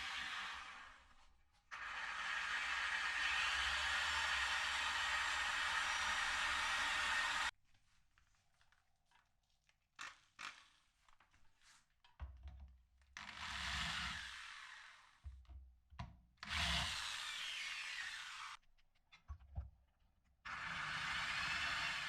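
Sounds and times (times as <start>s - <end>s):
power drill running: 0.0s - 1.1s, 1.8s - 7.5s, 16.4s - 18.6s, 20.5s - 22.0s.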